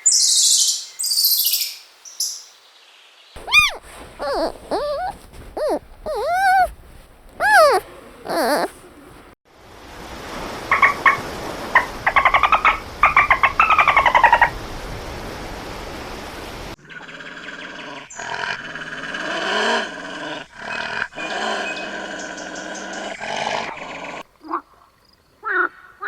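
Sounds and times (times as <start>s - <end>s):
animal clicking chatter: 3.4s - 8.7s
animal wavering cries: 3.4s - 8.8s.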